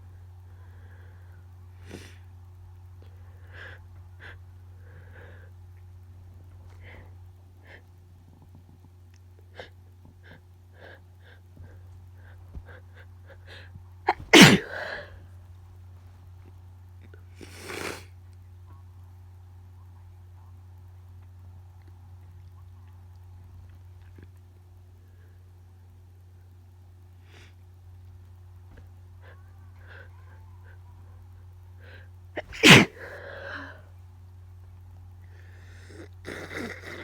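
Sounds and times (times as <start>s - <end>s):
low steady hum: 0.0s - 37.0s
woman sneezing: 1.8s - 2.2s, 14.1s - 15.1s, 32.4s - 33.3s
woman sniffling: 1.8s - 2.3s, 9.5s - 15.2s, 31.8s - 33.9s.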